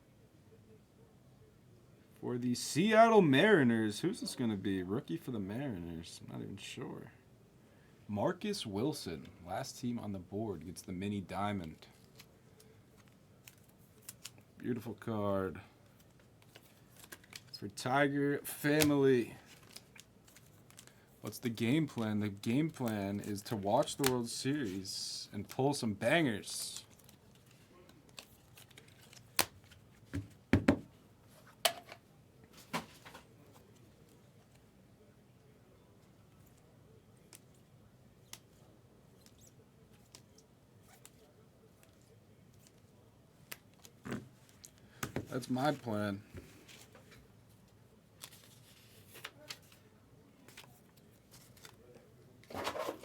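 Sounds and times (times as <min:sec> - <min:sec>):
cards clicking and rustling: 0:11.6 - 0:14.5, 0:15.9 - 0:17.6, 0:18.7 - 0:24.4, 0:26.5 - 0:30.4, 0:38.2 - 0:45.8, 0:48.2 - 0:53.0.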